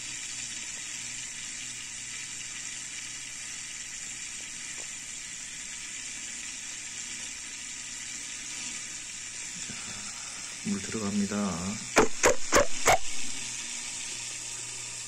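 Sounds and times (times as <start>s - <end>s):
water hissing and trickling: 0.0s - 15.0s
filter motor humming: 4.4s - 15.0s.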